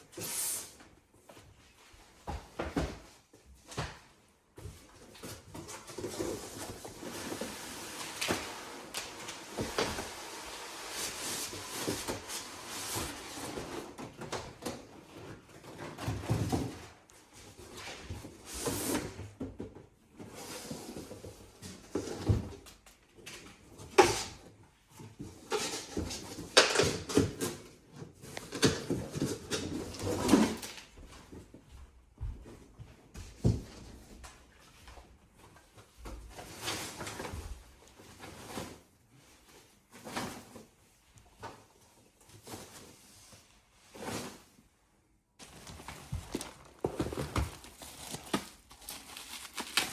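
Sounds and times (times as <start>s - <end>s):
packaging scraping and rustling: 5.8s - 14.0s, 45.4s - 49.9s.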